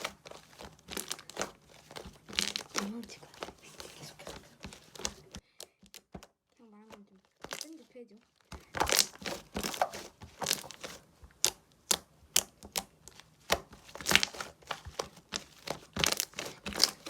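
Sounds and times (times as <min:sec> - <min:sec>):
slime crackling and clicking: 0:06.9 - 0:07.8, 0:08.4 - 0:14.4, 0:15.0 - 0:17.0.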